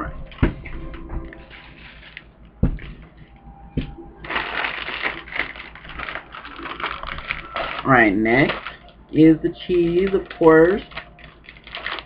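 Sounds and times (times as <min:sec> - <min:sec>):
plastic bag crinkling: 0:01.3 - 0:02.3, 0:04.2 - 0:12.0.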